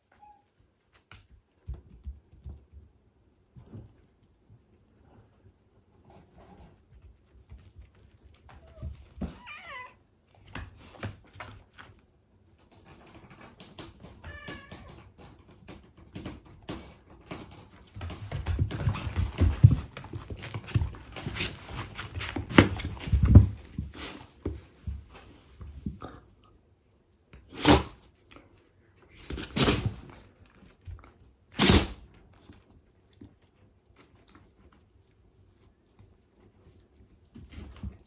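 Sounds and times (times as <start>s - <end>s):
cat meowing: 8.7s - 10.0s, 14.2s - 15.0s.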